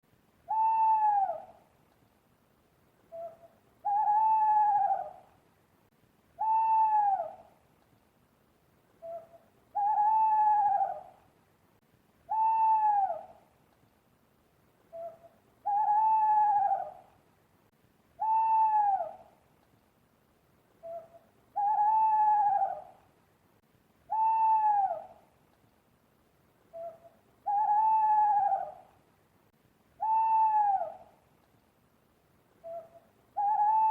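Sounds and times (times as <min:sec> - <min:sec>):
owl hooting: 0:00.4 - 0:01.6, 0:03.1 - 0:05.3, 0:06.4 - 0:07.5, 0:09.0 - 0:11.2, 0:12.3 - 0:13.4, 0:14.9 - 0:17.1, 0:18.2 - 0:19.3, 0:20.8 - 0:23.0, 0:24.1 - 0:25.3, 0:26.7 - 0:28.9, 0:30.0 - 0:31.2, 0:32.6 - 0:33.9.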